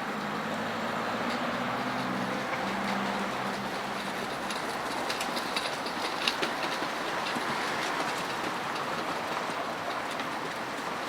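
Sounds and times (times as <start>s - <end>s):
tram wheels rumbling on track: 0.0s - 11.0s
wheels clicking over track joints: 0.0s - 11.0s.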